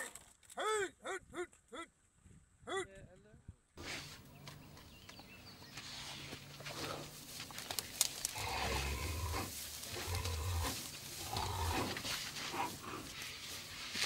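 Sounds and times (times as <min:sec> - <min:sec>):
big cat growling: 0:08.2 - 0:13.2.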